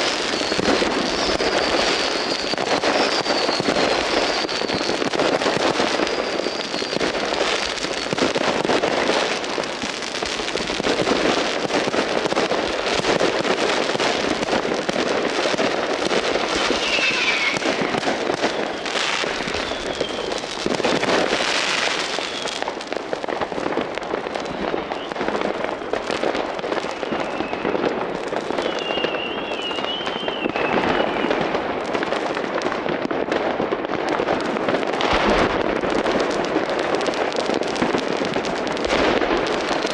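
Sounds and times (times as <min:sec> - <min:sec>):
faint firework whistles: 0:00.0 - 0:09.3, 0:13.1 - 0:31.8
fireworks cracking and banging: 0:00.0 - 0:39.9.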